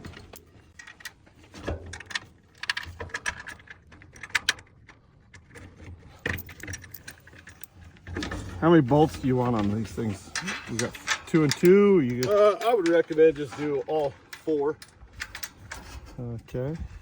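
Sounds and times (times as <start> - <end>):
metallic clinks of hardware: 6.2 - 15.9.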